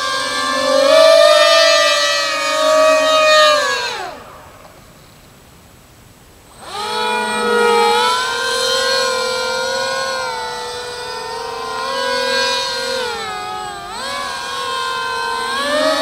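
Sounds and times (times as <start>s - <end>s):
electric motors and propellers whining: 0.0s - 16.0s.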